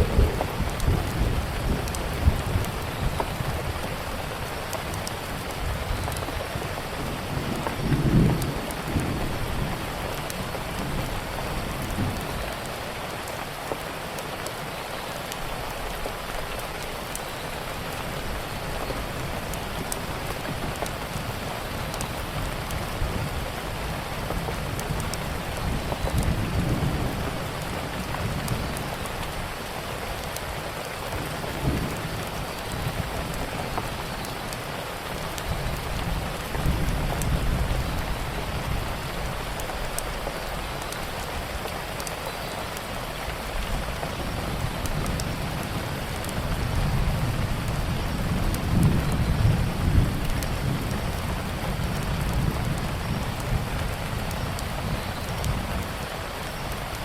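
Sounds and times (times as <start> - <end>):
thunder rumbling: 0.0 - 6.2
steady rain falling: 0.0 - 57.0.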